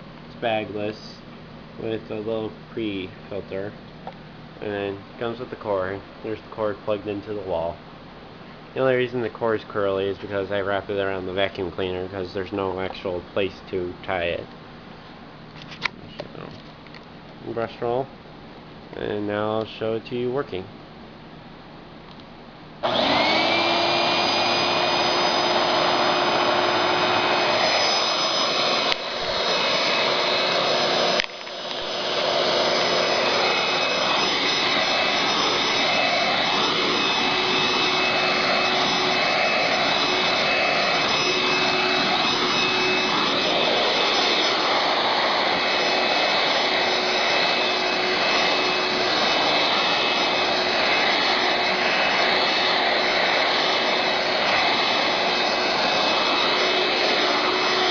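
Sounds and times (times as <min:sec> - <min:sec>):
handheld vacuum motor whine: 0:22.8 - 0:57.9.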